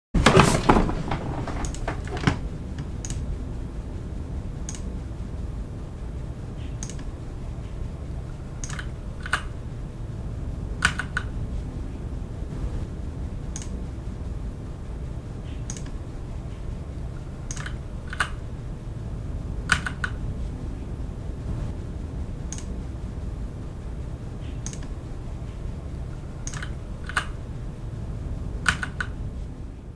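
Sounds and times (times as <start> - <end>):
low background noise: 0.2 - 29.9
typing on a computer keyboard: 6.8 - 7.1, 8.6 - 9.5, 17.5 - 18.5, 26.4 - 27.4.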